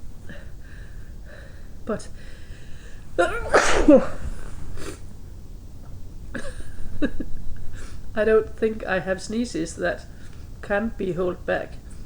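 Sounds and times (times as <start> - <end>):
person sneezing loudly: 3.2 - 5.0.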